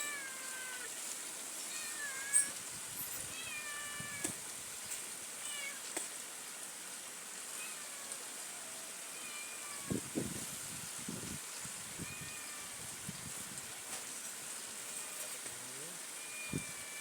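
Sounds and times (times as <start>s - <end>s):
cat meowing: 1.7s - 2.6s, 3.3s - 4.4s, 5.4s - 5.8s, 7.6s - 10.0s, 16.2s - 17.0s.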